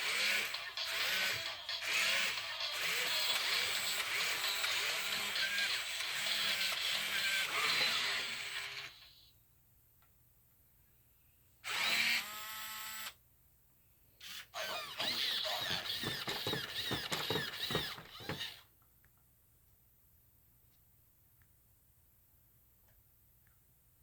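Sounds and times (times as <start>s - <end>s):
toy robot motors whirring: 0.0s - 9.3s, 11.6s - 13.2s, 14.2s - 18.7s.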